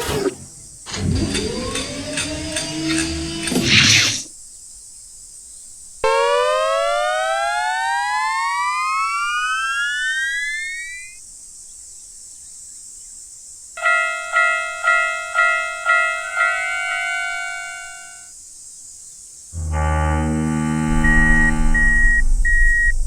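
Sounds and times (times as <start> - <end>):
cartoon rising tone: 6.0 - 11.2, 19.6 - 23.0
railroad crossing bell ringing: 13.8 - 18.3.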